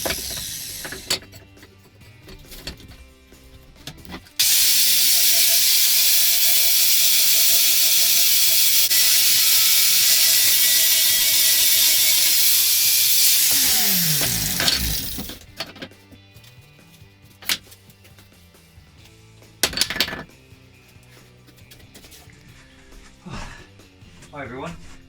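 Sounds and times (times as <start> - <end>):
grinder motor spinning down: 0.0 - 1.1, 4.4 - 15.4
grinder hissing on steel: 0.0 - 1.2, 4.4 - 15.5.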